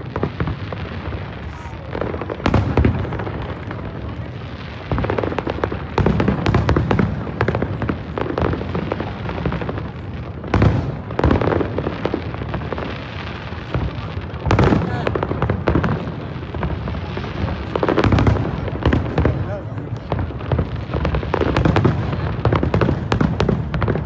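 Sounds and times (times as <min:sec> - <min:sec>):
fireworks booms: 0:00.0 - 0:24.0
fireworks crackling pops: 0:00.0 - 0:24.0.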